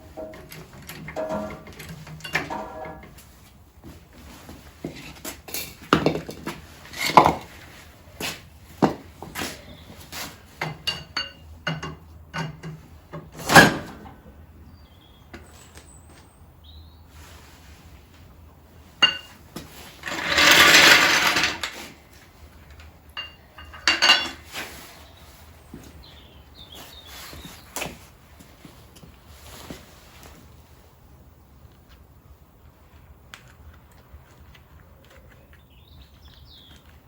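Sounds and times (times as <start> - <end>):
metal tools clinking and knocking: 0.0 - 3.2, 10.6 - 12.8, 19.0 - 19.4, 20.0 - 21.8, 22.8 - 24.4.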